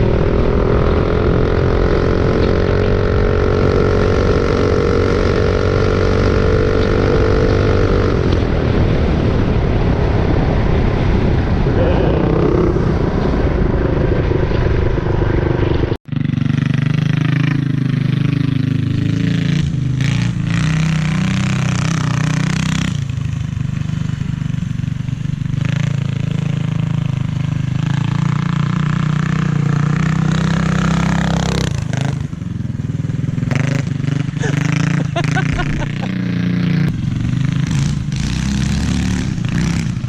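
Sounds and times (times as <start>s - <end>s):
small motorbike engine revving: 33.3s - 40.0s.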